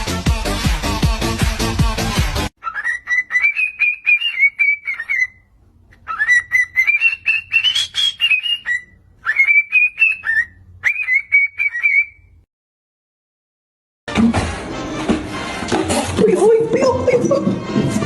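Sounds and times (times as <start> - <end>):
high-pitched warbling whistling: 2.6 - 5.4, 6.1 - 12.2.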